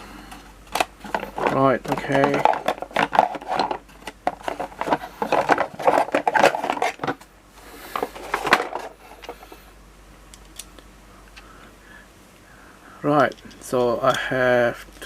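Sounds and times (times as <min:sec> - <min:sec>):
hands handling screwdrivers: 0:00.7 - 0:07.2
packaging rustling: 0:00.7 - 0:07.3, 0:07.9 - 0:09.4.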